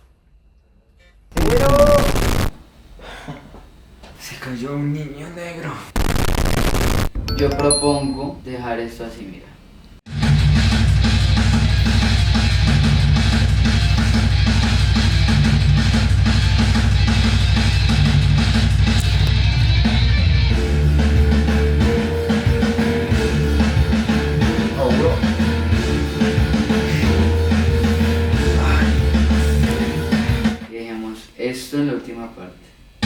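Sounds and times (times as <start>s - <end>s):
drum kit: 10.1s - 30.8s
heavy metal music: 10.1s - 30.8s
electric guitar riff: 11.4s - 30.6s.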